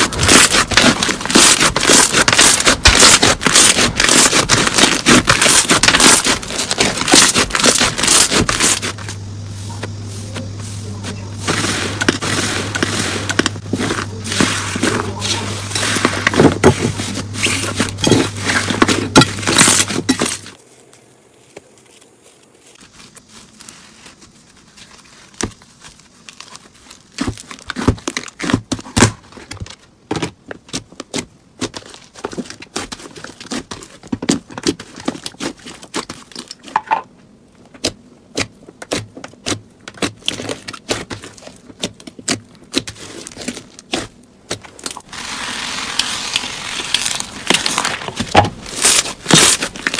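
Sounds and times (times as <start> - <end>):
slime crackling: 0.0 - 20.6, 38.3 - 49.9.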